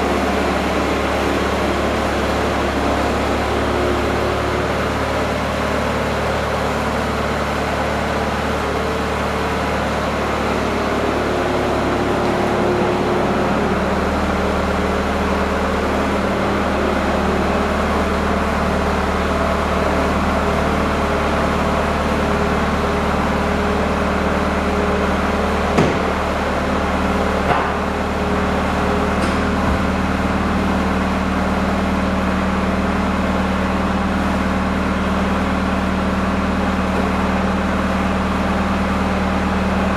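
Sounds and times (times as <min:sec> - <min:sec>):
loader engine running: 0:00.0 - 0:39.9
sharp knocks: 0:25.7 - 0:26.2, 0:27.4 - 0:27.9.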